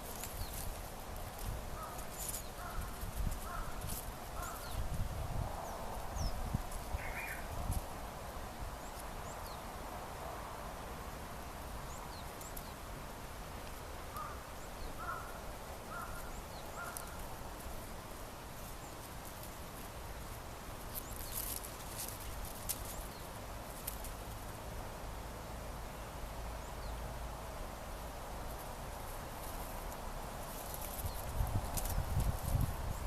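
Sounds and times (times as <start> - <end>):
wind rumble on microphone: 0.0 - 10.4, 30.2 - 33.0
short bird calls: 7.0 - 7.5.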